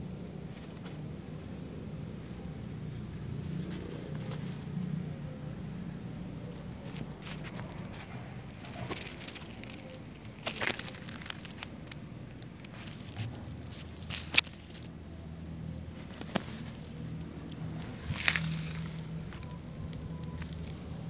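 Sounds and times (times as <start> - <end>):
dry grass and leaves rustling: 0.4 - 21.0
sharp crunches: 6.4 - 15.0, 15.8 - 19.4.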